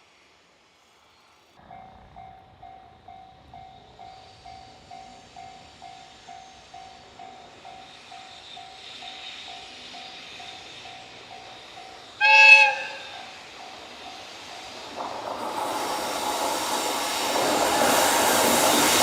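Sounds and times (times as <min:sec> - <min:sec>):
approaching train wheels: 0:00.0 - 0:19.0
train horn blast: 0:12.2 - 0:13.4.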